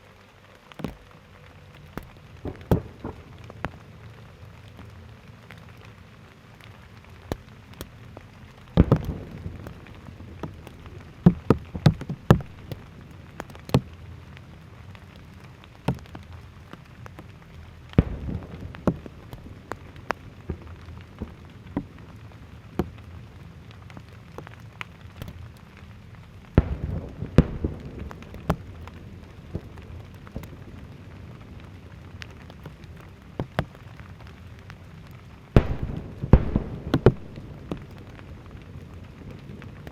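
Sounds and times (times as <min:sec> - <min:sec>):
fireworks crackle: 0:00.0 - 0:39.9
fireworks bangs: 0:35.6 - 0:38.0.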